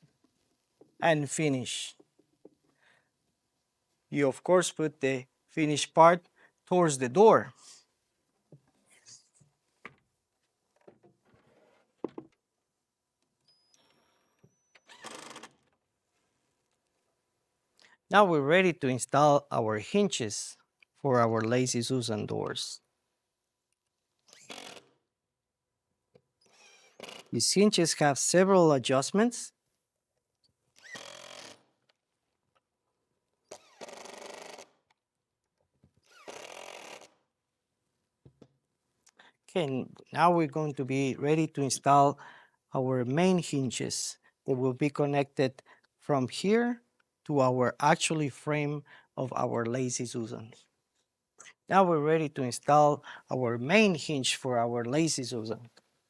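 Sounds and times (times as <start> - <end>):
drill driving screws: 13.8 - 15.7, 24.3 - 25.0, 26.4 - 27.3, 30.8 - 31.7, 33.5 - 34.8, 36.0 - 37.2
small power tool motor whine: 30.8 - 31.6.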